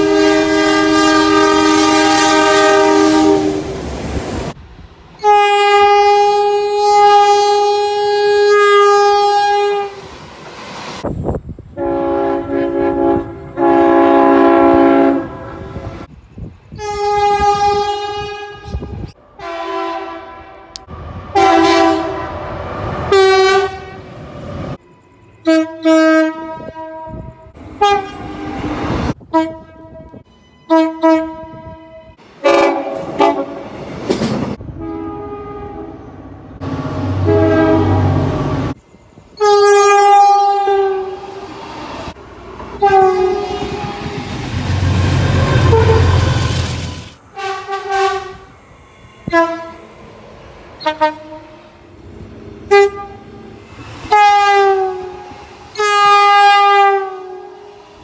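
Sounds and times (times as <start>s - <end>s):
locomotive air horn blasts: 0.0s - 3.8s, 5.2s - 10.0s, 11.8s - 16.1s, 16.8s - 24.1s, 25.4s - 33.7s, 34.7s - 38.8s, 39.4s - 41.4s, 42.8s - 49.9s, 50.8s - 51.6s, 52.7s - 58.0s
train rumble: 31.2s - 58.0s.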